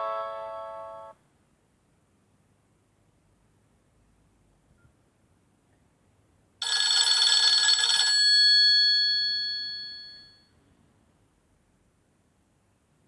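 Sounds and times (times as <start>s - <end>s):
clear ringing tones: 0.0s - 1.1s
phone ringtone: 0.0s - 1.1s, 6.6s - 10.3s.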